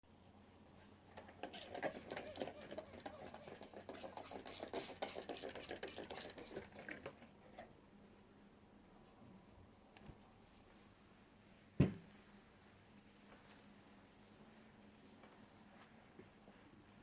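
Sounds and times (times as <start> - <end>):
computer keyboard typing: 1.5 - 7.1.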